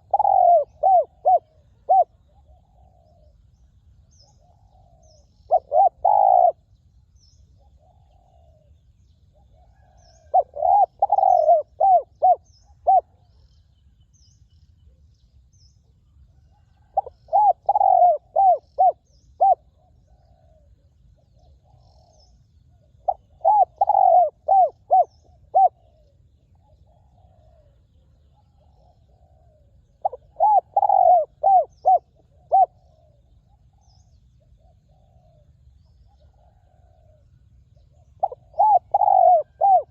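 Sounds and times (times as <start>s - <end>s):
dove cooing: 0.0s - 3.5s, 4.1s - 6.8s, 7.5s - 13.5s, 16.4s - 39.9s.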